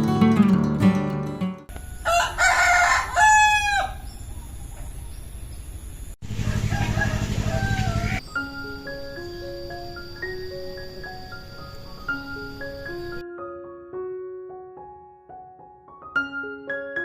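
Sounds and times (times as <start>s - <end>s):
rooster crowing: 1.7s - 4.1s, 6.2s - 8.2s.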